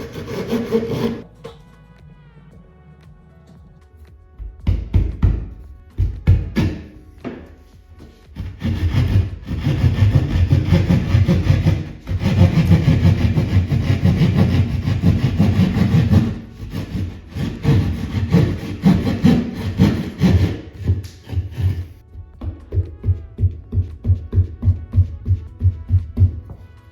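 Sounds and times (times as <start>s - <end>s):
hand saw cutting drywall: 0.0s - 1.3s, 8.3s - 22.0s.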